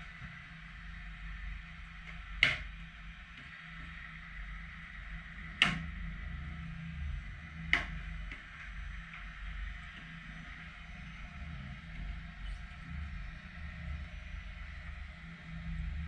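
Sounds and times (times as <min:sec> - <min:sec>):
low hum: 0:00.0 - 0:16.0.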